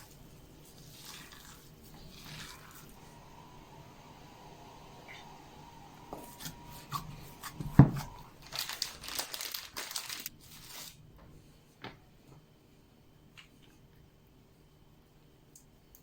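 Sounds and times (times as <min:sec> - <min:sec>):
plastic bag crinkling: 0:08.0 - 0:11.0.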